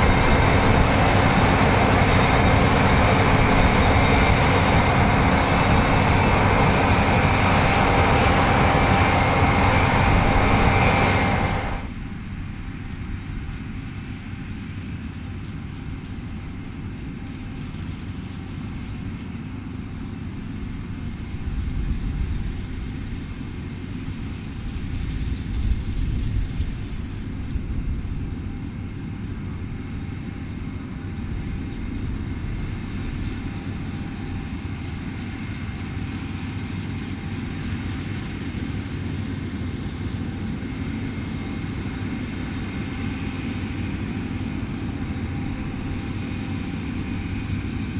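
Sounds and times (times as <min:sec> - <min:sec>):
loud low rumbles: 0:00.0 - 0:12.2
combine harvester drone: 0:00.0 - 0:47.9.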